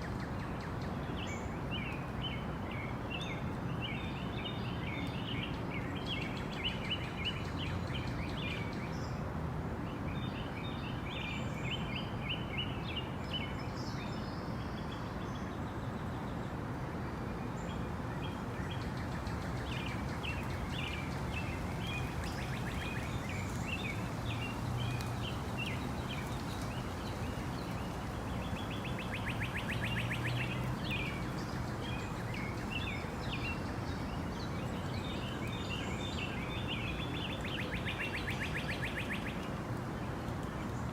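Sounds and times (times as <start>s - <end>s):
birds chirping and calling: 18.3s - 39.5s.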